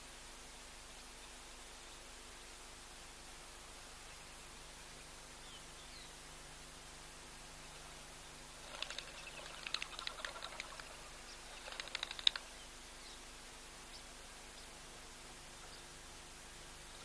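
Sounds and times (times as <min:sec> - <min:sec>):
faint background hiss: 0:00.0 - 0:17.0
small bird chattering: 0:08.6 - 0:12.6.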